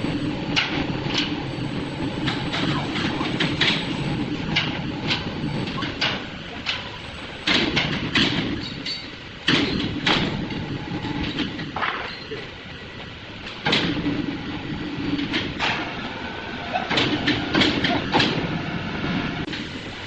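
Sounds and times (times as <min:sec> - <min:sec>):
sharp knocks and clatter: 0:04.5 - 0:12.3, 0:13.4 - 0:14.2.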